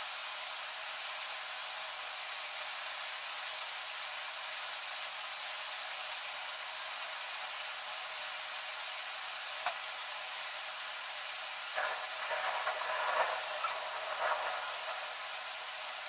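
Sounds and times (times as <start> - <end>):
spray paint can hissing: 11.7 - 16.0.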